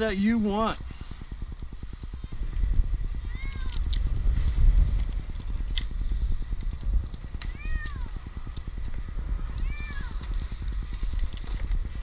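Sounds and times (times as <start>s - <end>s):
steady low rumble: 0.0s - 12.0s
kitten meowing: 3.2s - 3.8s, 7.5s - 8.1s, 9.6s - 10.2s.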